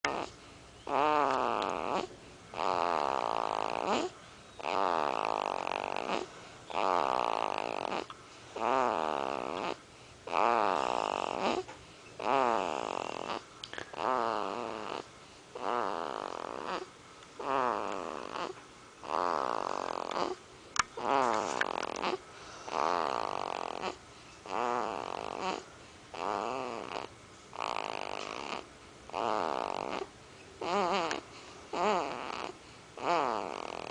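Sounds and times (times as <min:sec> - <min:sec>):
person snoring: 0:00.1 - 0:20.4, 0:21.0 - 0:25.6, 0:26.2 - 0:33.9.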